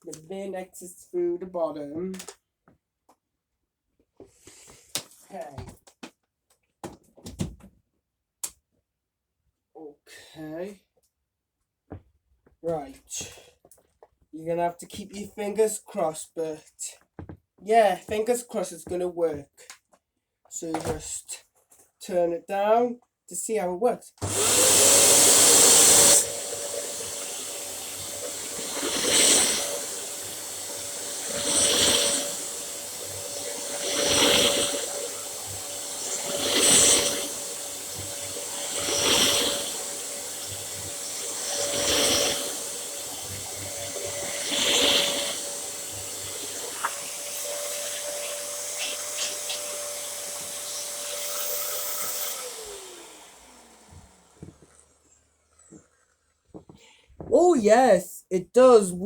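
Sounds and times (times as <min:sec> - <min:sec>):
upright vacuum cleaner running: 0:24.2 - 0:57.3.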